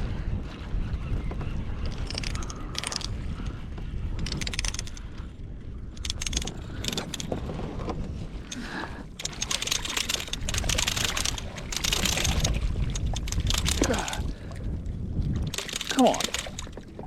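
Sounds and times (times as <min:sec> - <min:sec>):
rushing wind and water: 0:00.0 - 0:17.0
wind buffeting microphone: 0:00.0 - 0:17.0
gear clicking and rattling: 0:01.8 - 0:03.5, 0:04.2 - 0:05.3, 0:05.9 - 0:07.4, 0:08.5 - 0:14.4, 0:15.5 - 0:17.0.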